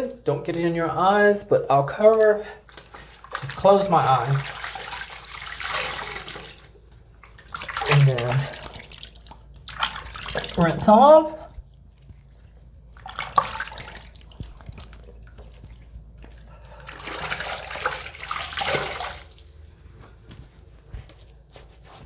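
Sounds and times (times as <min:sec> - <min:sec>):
water dripping: 0:01.8 - 0:20.5
water splashing on face: 0:02.1 - 0:20.5.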